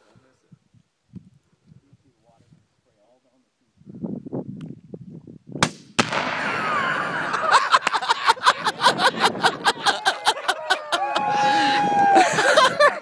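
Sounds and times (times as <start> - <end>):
rifle shot: 5.6 - 6.8
heavy explosion blast: 5.6 - 7.3.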